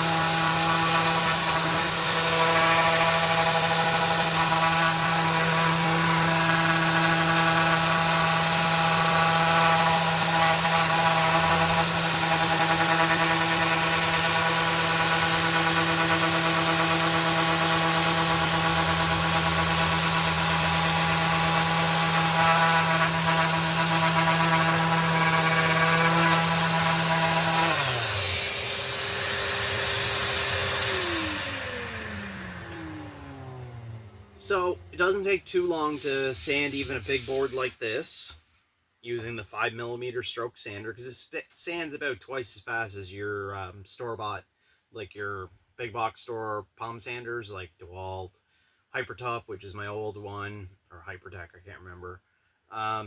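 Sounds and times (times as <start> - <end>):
orbital sander sanding wood: 0.0 - 38.0.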